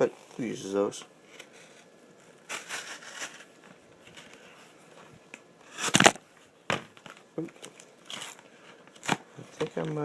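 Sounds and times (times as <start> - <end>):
cardboard tearing: 2.5 - 3.5, 5.7 - 6.2.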